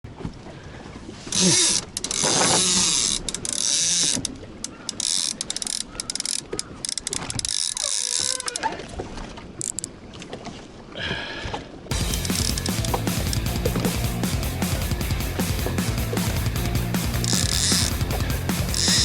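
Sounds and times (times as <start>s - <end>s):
fishing reel clicking: 1.3s - 8.6s, 12.2s - 13.5s, 17.2s - 18.0s, 18.6s - 19.0s.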